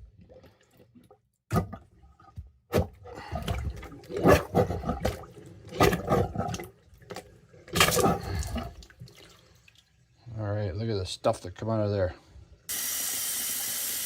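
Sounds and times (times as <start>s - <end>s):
plunger sucking and gurgling in water: 0.0s - 9.9s.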